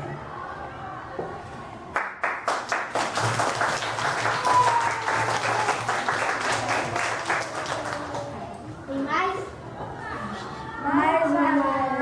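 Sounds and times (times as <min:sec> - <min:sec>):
people clapping: 0:01.9 - 0:08.6.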